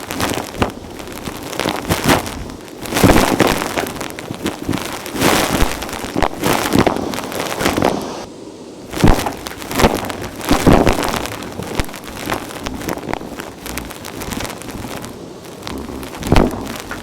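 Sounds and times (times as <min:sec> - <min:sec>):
debris crackling and crunching: 0:00.0 - 0:08.0, 0:08.9 - 0:17.0
vacuum cleaner sucking dirt: 0:07.0 - 0:08.3.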